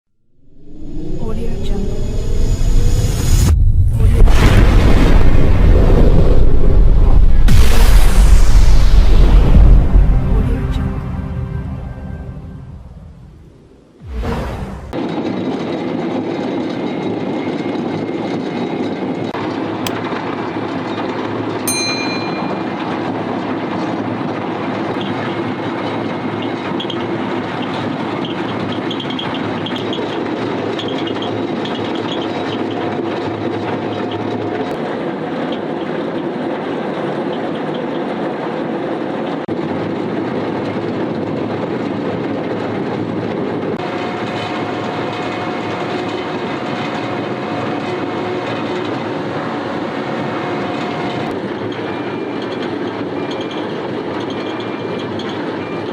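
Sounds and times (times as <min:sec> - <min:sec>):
diesel engine: 0:42.8 - 0:55.9.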